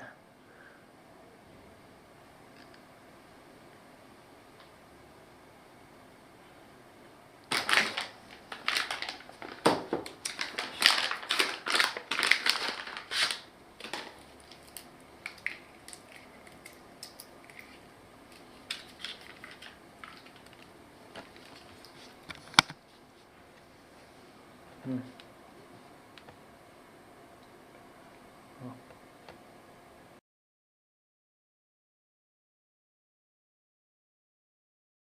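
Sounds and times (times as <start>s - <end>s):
packaging crinkling and rustling: 7.5s - 23.0s.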